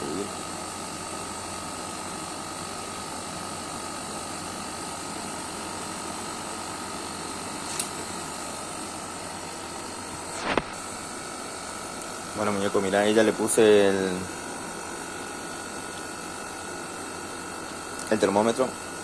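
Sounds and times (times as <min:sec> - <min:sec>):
air conditioner running: 0:00.0 - 0:19.0
small click: 0:07.7 - 0:08.0.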